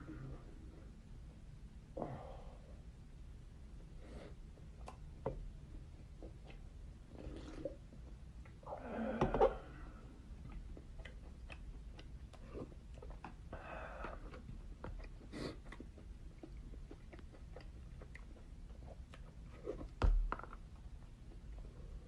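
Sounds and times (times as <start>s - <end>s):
mouth clicks and smacks: 4.6s - 5.1s, 10.4s - 21.6s
person chewing food: 10.1s - 22.0s.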